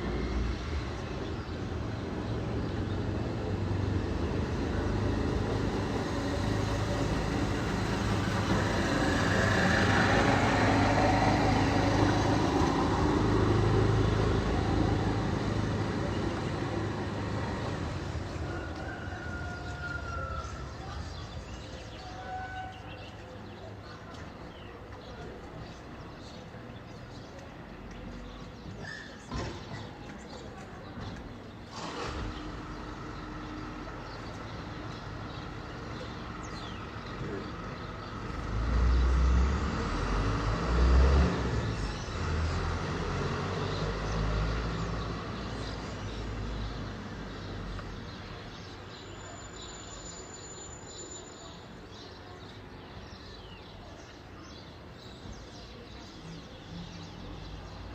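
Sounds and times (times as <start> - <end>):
birds chirping: 0.0 - 39.3
vehicle passing: 1.7 - 21.2, 31.7 - 47.8.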